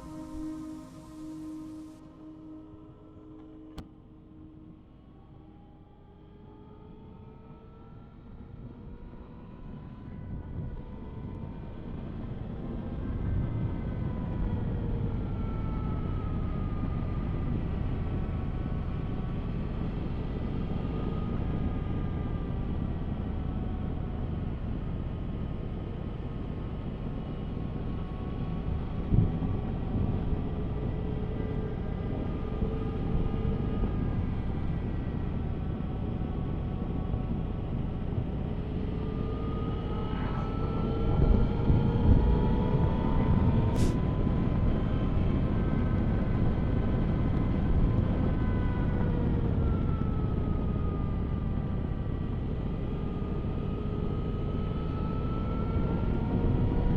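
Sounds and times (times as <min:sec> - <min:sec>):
wind and road noise: 0:11.5 - 0:56.9.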